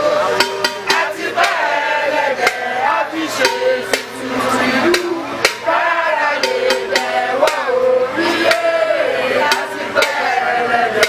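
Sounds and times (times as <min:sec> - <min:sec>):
group of voices chanting: 0:00.0 - 0:11.0
sharp percussive clacks: 0:04.9 - 0:05.8, 0:06.4 - 0:07.7, 0:09.4 - 0:10.4.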